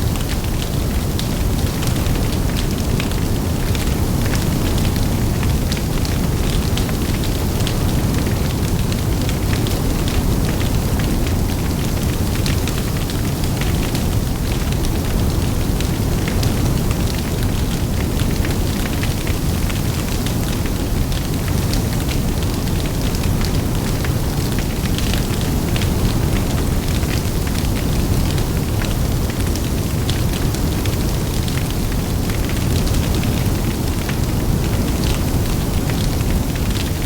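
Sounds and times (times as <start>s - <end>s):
low rumble of flames and wind: 0.0s - 37.0s.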